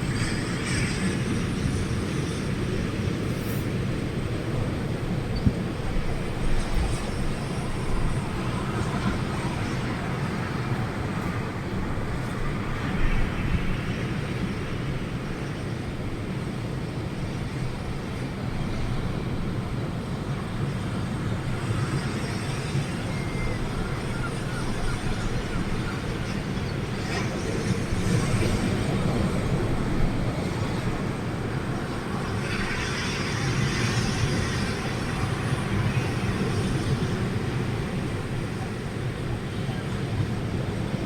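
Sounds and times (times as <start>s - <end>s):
storm wind buffeting microphone: 0.0s - 41.0s.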